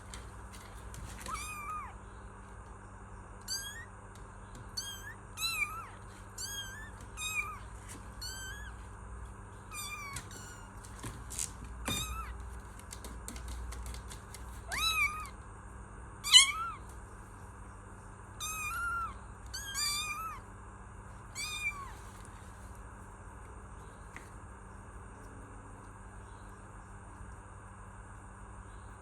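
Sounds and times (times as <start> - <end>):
kitten meowing: 1.2 - 2.0, 3.5 - 3.9, 4.7 - 8.8, 9.7 - 10.8, 11.9 - 12.4, 14.6 - 15.4, 16.2 - 16.9, 18.4 - 20.4, 21.3 - 22.1.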